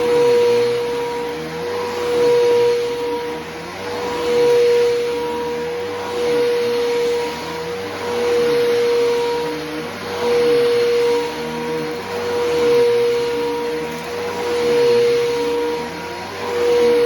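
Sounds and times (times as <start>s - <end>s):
vacuum cleaner running: 0.0s - 17.0s.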